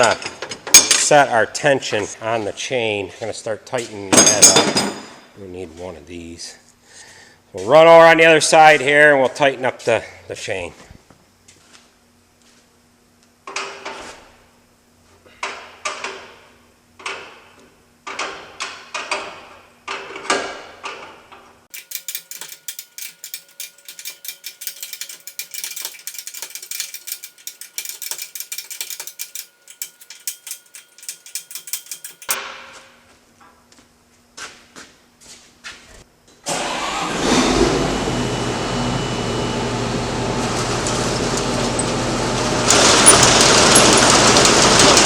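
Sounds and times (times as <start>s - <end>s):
ratchet wrench clicking: 21.7s - 32.4s.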